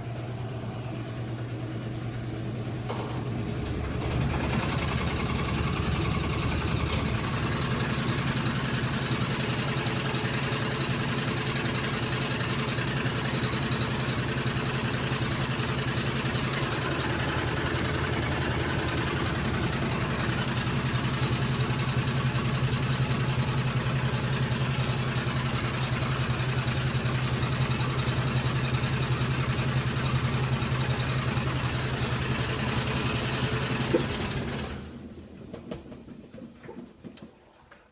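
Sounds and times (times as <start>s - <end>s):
washing machine shaking: 1.5s - 37.2s
washing machine click: 2.8s - 8.0s.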